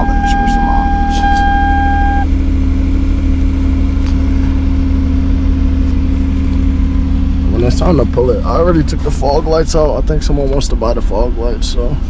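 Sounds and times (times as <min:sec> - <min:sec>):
steady high tone: 0:00.0 - 0:02.4
car engine idling: 0:00.0 - 0:12.0.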